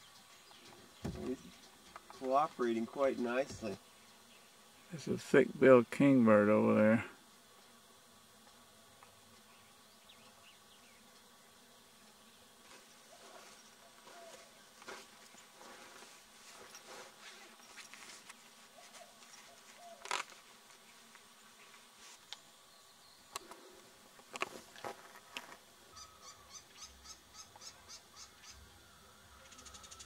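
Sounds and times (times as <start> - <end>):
wild birds chirping: 0.0 - 5.2, 9.2 - 15.6, 18.7 - 20.2, 25.8 - 30.0.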